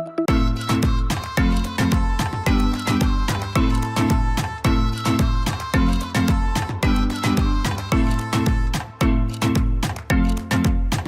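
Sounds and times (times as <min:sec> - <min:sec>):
upbeat dance music: 0:00.0 - 0:11.0.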